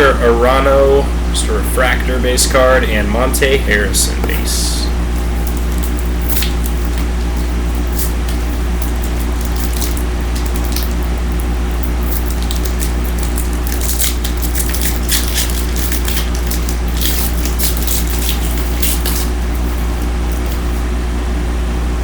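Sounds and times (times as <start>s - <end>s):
loud steady low hum: 0.0s - 22.0s
foil wrappers crinkling: 4.0s - 20.9s.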